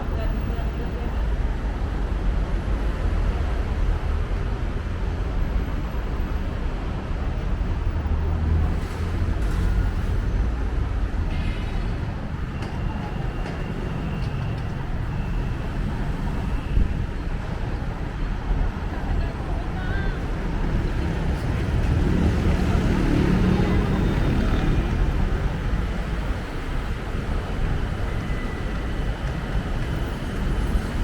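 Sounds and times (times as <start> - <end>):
road traffic rumble: 0.0 - 31.0.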